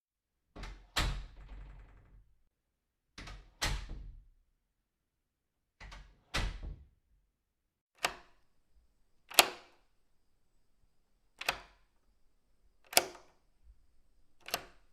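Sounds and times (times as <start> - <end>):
sharp clicks: 9.3 - 9.8, 11.4 - 11.8, 12.8 - 13.4, 14.4 - 14.9.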